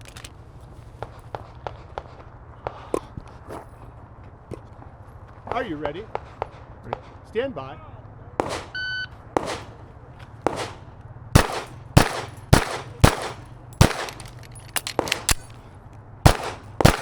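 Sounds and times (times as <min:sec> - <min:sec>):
pistol shots: 0:08.4 - 0:17.0.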